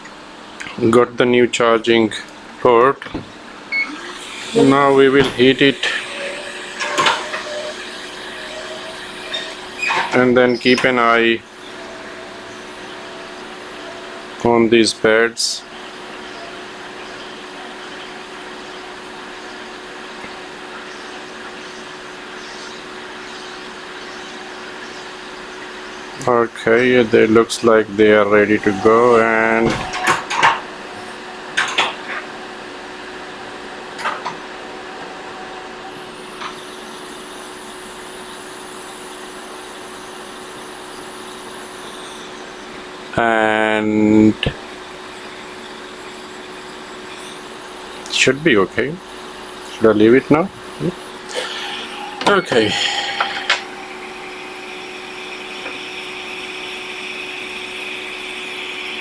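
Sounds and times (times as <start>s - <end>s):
constant hum: 0.0s - 59.0s
faint high whine: 0.0s - 59.0s
hot air station blowing: 0.0s - 59.0s
hot air blowing hiss: 3.8s - 14.8s, 50.8s - 59.0s.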